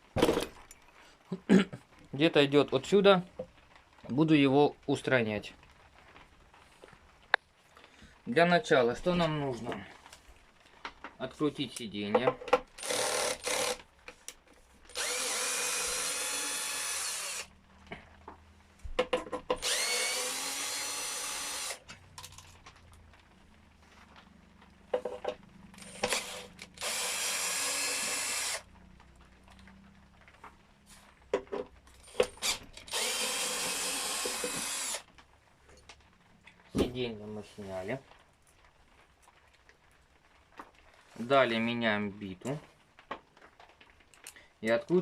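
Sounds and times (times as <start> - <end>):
power screwdriver whining: 12.8 - 13.8, 14.9 - 17.5, 19.6 - 21.9, 25.8 - 28.7, 32.1 - 35.1.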